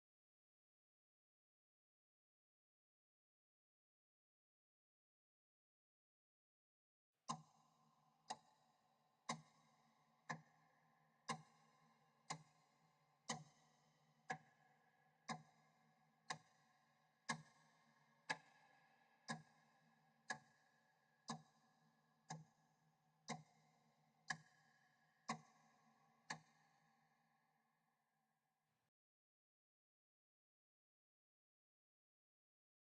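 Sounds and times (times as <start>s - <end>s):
clock ticking with echo: 7.3s - 27.1s.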